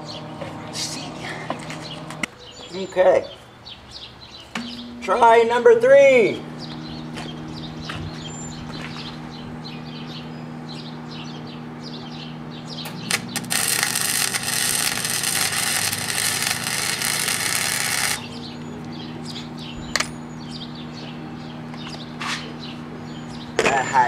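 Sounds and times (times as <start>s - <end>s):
birds chirping: 0.0s - 24.0s
low hum: 4.6s - 21.8s
welder arc crackling: 13.0s - 18.3s.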